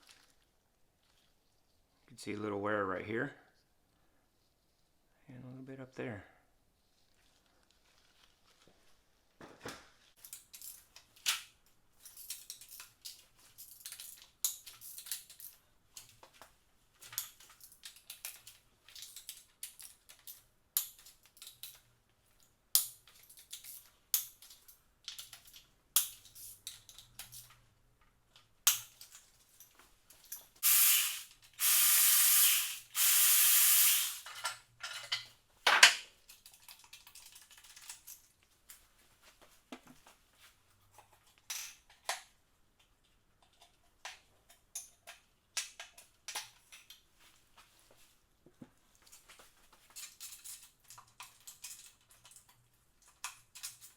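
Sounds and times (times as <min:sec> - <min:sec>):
tools and metal parts clinking: 0:10.2 - 0:16.4, 0:17.0 - 0:27.6, 0:28.4 - 0:30.6, 0:34.1 - 0:38.5, 0:43.4 - 0:47.1, 0:49.1 - 0:53.9
hissing sprays: 0:30.6 - 0:34.2.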